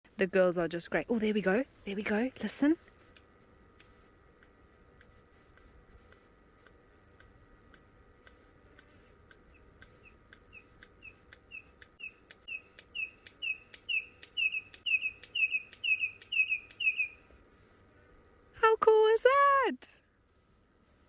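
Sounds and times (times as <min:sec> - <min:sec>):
faint bird ticks: 0:02.8 - 0:17.2
bird piping whistled notes: 0:09.5 - 0:17.3.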